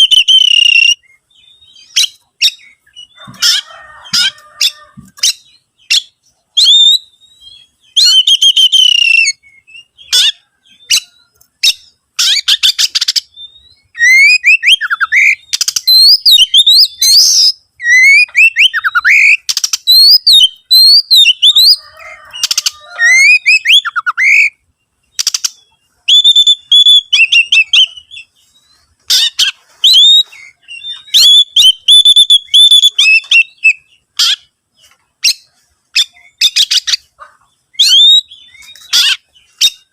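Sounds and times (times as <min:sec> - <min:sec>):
bird whistled song: 0:00.0 - 0:04.4, 0:05.2 - 0:34.5, 0:35.2 - 0:37.1, 0:37.7 - 0:39.9.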